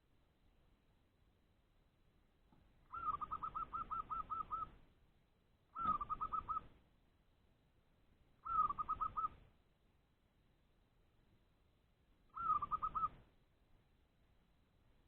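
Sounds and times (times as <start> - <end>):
dove cooing: 2.9 - 4.8, 5.8 - 6.7, 8.4 - 9.4, 12.3 - 13.2.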